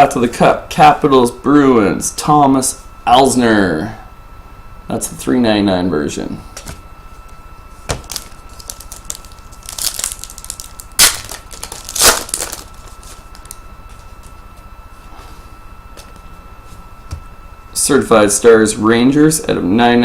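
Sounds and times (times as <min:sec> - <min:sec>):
plastic wrapping crinkling: 0:07.8 - 0:14.4.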